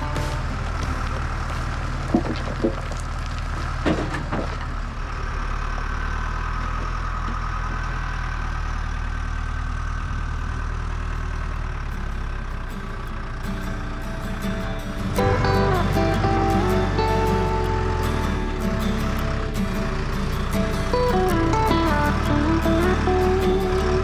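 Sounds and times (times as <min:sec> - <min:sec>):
heavy diesel engine running: 0:00.0 - 0:24.0.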